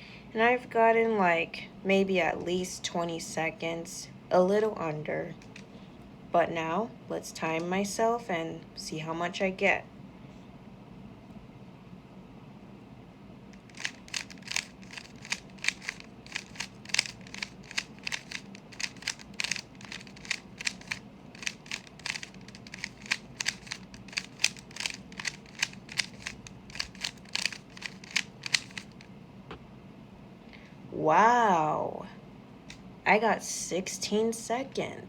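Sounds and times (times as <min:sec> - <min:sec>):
puzzle cube clicking: 0:13.6 - 0:29.1.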